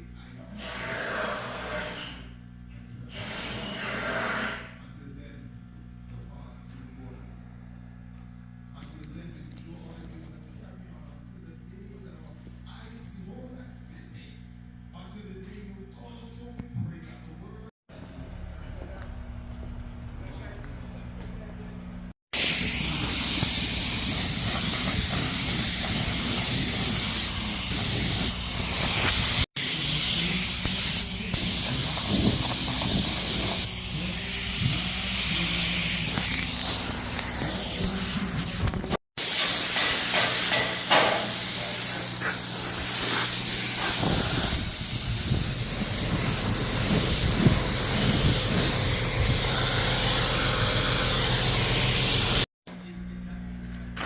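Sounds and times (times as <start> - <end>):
paint spray gun hissing: 22.4 - 52.5.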